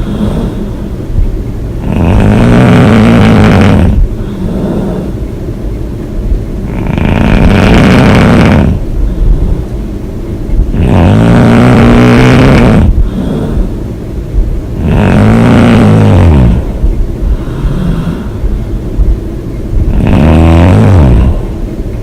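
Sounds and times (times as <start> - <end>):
woman snoring: 0.0 - 0.9, 1.8 - 5.2, 6.7 - 9.7, 10.7 - 13.8, 14.8 - 18.5, 19.8 - 21.6
quiet breathing: 0.0 - 5.8, 8.2 - 10.9, 11.8 - 14.9, 15.7 - 19.9, 21.1 - 22.0.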